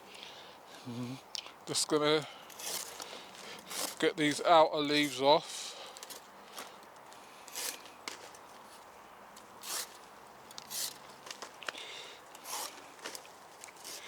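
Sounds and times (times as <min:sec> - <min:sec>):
hand saw rasping through cabbage: 0:02.5 - 0:04.0, 0:07.5 - 0:07.8, 0:09.6 - 0:10.0, 0:10.7 - 0:11.0, 0:12.4 - 0:12.8, 0:13.8 - 0:14.0.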